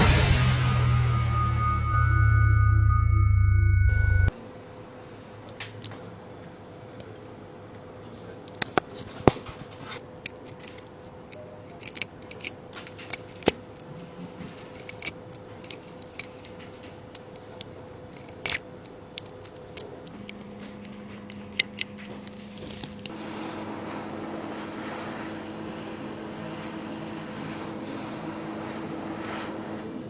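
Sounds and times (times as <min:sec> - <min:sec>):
lower steady hum: 0:00.0 - 0:04.3.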